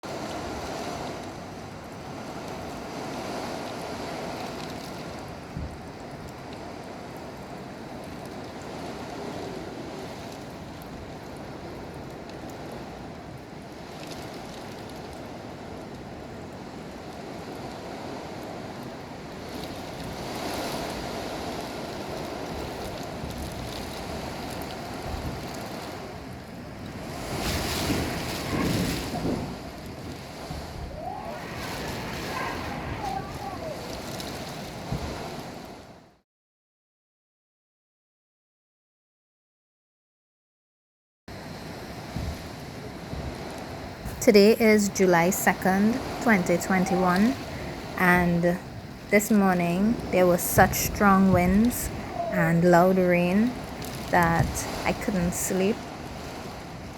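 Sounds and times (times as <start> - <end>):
wind and rain rushing: 0.0 - 36.1, 41.3 - 49.2, 49.8 - 52.4, 53.4 - 55.1, 55.7 - 56.9
wind buffeting microphone: 19.4 - 35.8.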